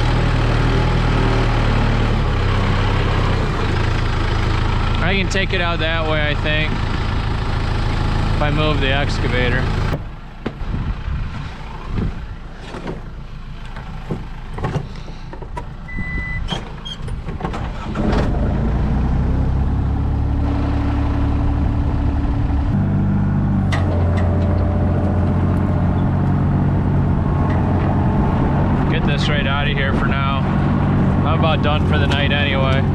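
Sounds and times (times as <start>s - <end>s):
excavator diesel engine: 0.0s - 32.9s
knocks and clunks: 9.9s - 10.7s, 12.0s - 18.5s, 23.6s - 26.4s.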